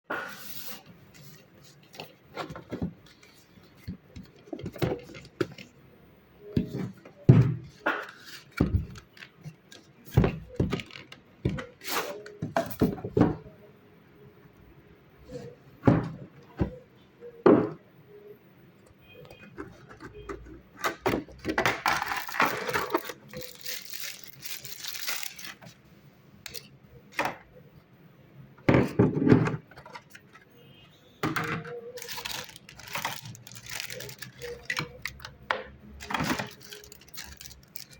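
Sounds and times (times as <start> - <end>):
hard plastic objects knocking: 10.1 - 11.7
packaging rustling: 21.9 - 25.8, 32.0 - 35.3, 36.0 - 37.9.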